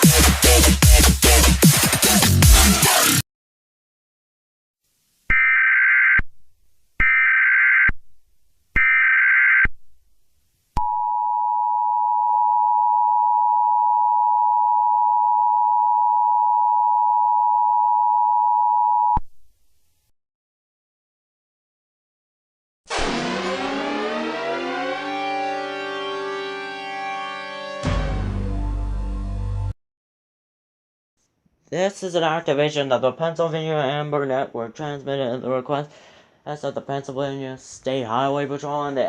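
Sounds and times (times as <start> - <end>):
steady dual attention tone: 22.9 - 29.2.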